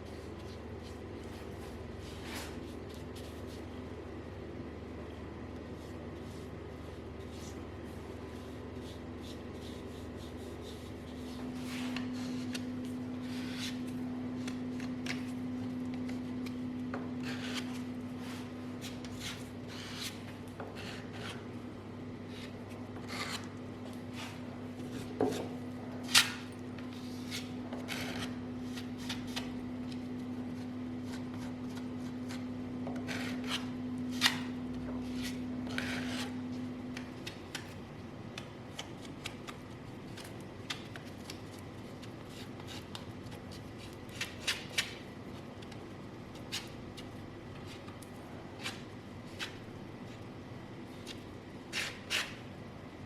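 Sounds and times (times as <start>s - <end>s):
steady low hum: 0.0s - 53.0s
hand rubbing and scraping surface: 5.7s - 15.4s, 16.0s - 21.5s, 22.3s - 36.6s.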